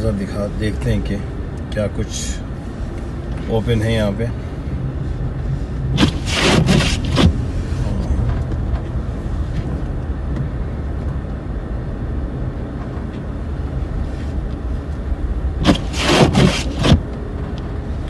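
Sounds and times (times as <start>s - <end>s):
low rumble: 2.4s - 18.0s
short rustling noises: 5.9s - 9.8s, 15.6s - 17.0s.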